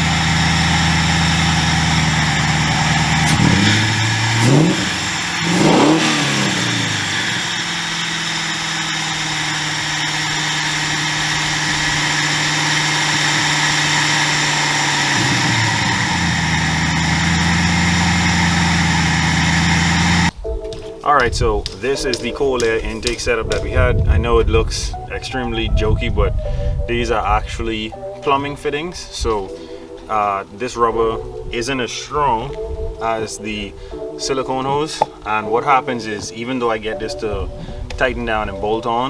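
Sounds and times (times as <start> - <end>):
engine idling and revving: 0.0 - 20.3.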